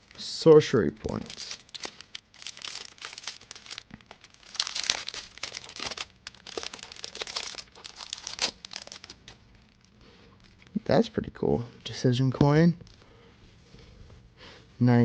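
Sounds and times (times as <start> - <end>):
packaging crinkling: 0.0 - 10.8.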